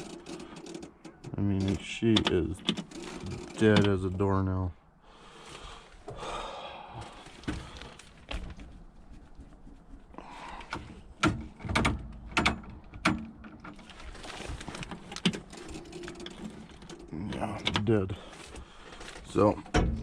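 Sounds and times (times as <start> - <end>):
sharp knocks and clunks: 10.6 - 13.9, 19.3 - 20.0.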